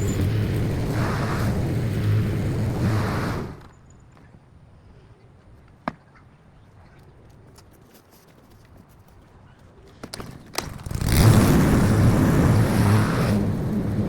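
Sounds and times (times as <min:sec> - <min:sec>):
lawn-care engine running: 0:00.0 - 0:03.7, 0:10.6 - 0:14.0.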